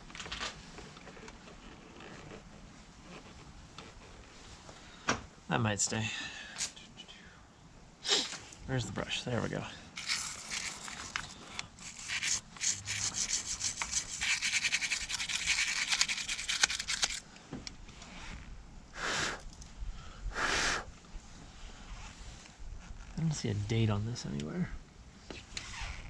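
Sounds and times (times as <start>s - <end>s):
brush scrubbing metal: 10.0s - 17.2s
brush swishes: 11.8s - 16.7s.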